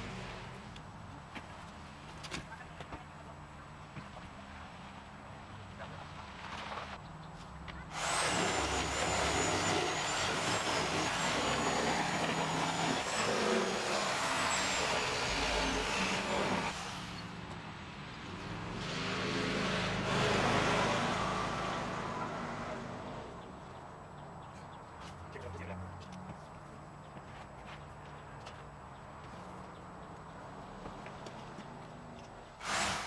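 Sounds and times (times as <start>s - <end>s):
motor vehicle running: 3.8s - 24.5s
thin high whine: 7.9s - 17.3s.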